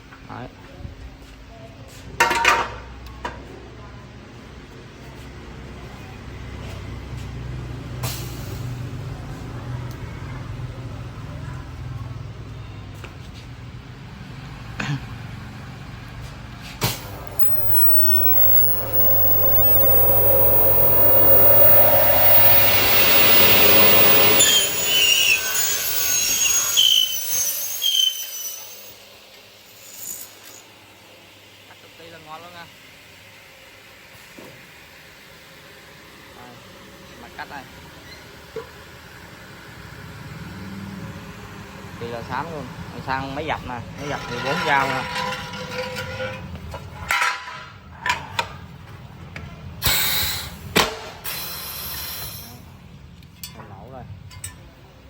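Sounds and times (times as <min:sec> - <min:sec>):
cutting saw hissing: 0:16.8 - 0:29.0
low hum: 0:17.0 - 0:25.8
saw squealing: 0:17.0 - 0:29.0.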